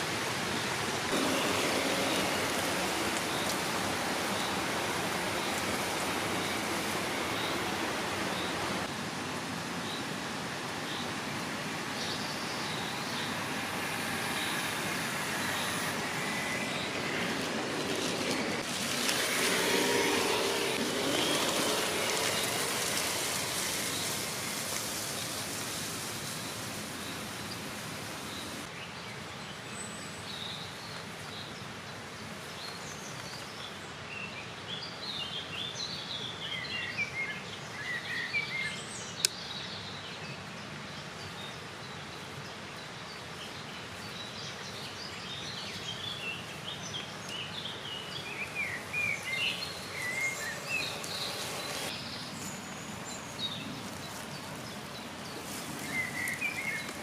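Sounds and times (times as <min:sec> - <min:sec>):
steady outdoor rushing noise: 0:00.0 - 0:28.7, 0:45.5 - 0:57.0
birds chirping: 0:11.9 - 0:28.7, 0:43.4 - 0:57.0.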